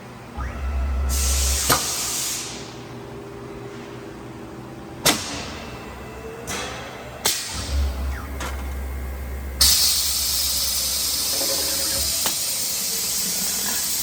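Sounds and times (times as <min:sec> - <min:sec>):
lathe humming: 0:07.7 - 0:14.0.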